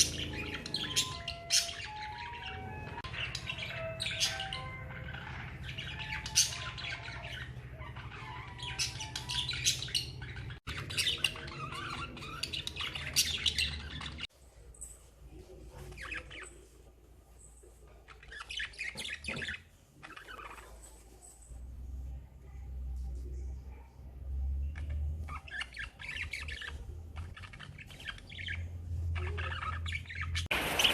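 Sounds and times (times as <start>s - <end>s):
budgerigars chirping and squawking: 0.0s - 14.3s, 15.9s - 16.8s, 17.9s - 21.0s, 24.5s - 30.9s.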